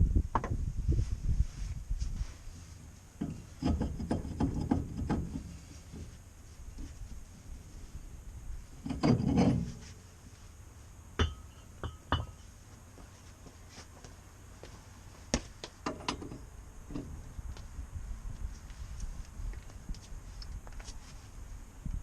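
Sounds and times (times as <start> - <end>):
metallic knocks and clinks: 11.2 - 12.4.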